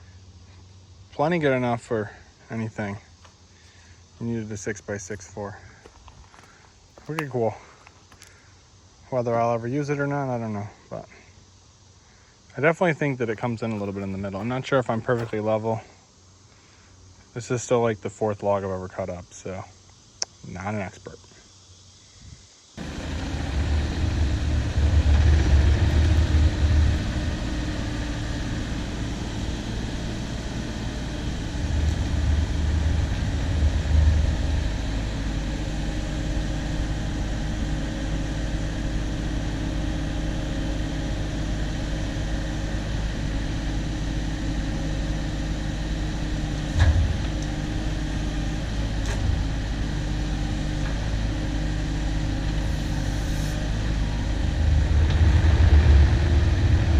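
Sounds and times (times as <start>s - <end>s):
sawmill engine running: 13.4s - 15.6s, 22.8s - 56.9s.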